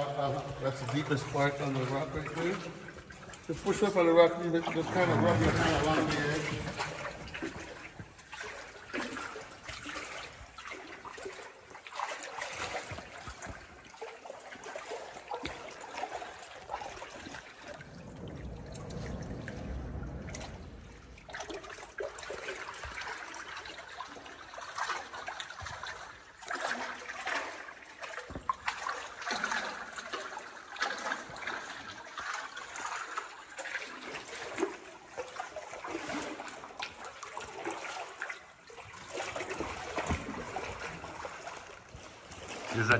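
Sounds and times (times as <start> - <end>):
river water trickling and lapping: 0.0 - 42.9
small water splashes: 0.0 - 42.9
low rumble: 17.7 - 21.7.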